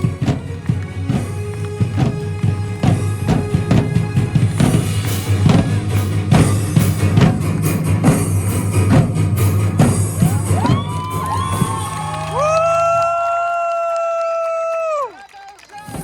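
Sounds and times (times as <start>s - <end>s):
steady low bass: 0.0s - 11.1s
fast drum and percussion strokes: 0.0s - 12.6s, 15.8s - 16.0s.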